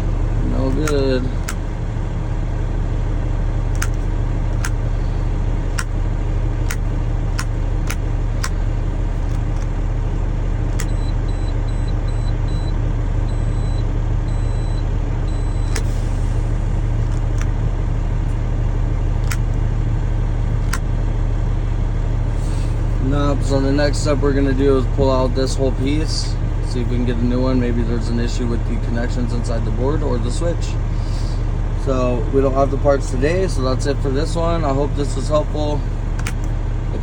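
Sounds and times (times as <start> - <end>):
truck engine idling: 0.0 - 37.0
sharp clicks: 3.7 - 4.8.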